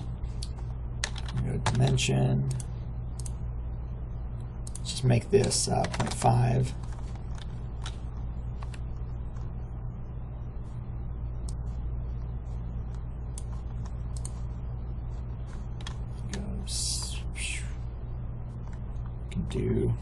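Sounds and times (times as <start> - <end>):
steady low hum: 0.0 - 20.0
computer keyboard typing clicks: 0.4 - 3.4, 4.6 - 6.2, 12.9 - 14.4.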